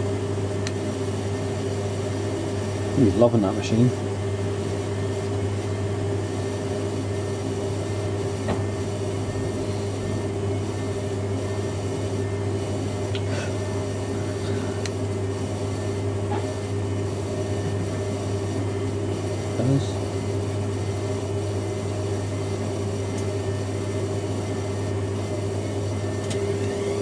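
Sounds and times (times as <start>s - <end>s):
washing machines humming: 0.0s - 27.0s.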